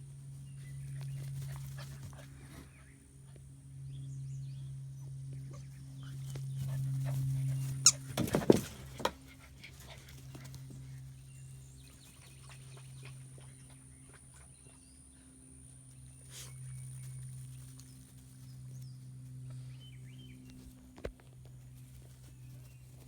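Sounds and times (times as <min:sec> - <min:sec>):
steady low hum: 0:00.0 - 0:23.0
puppies scuffling thumps and rattles: 0:06.3 - 0:11.1.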